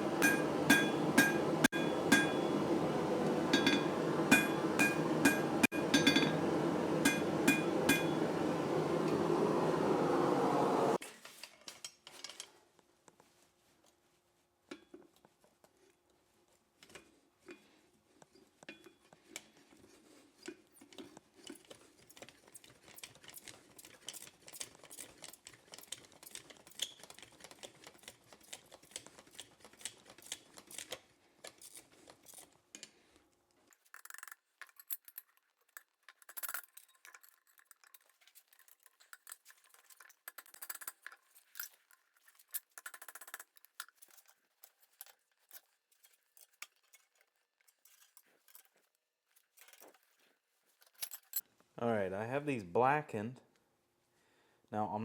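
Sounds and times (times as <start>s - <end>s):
background hum: 0.0s - 11.0s.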